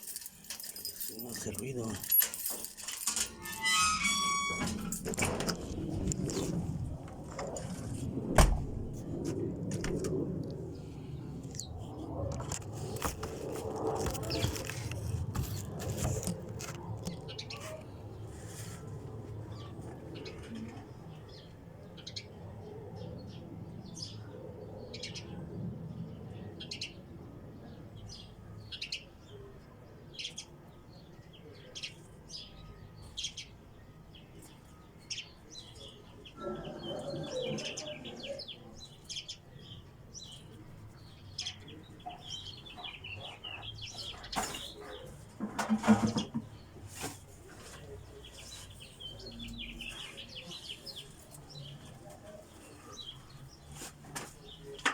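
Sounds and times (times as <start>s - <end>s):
birds chirping: 30.2s - 54.9s.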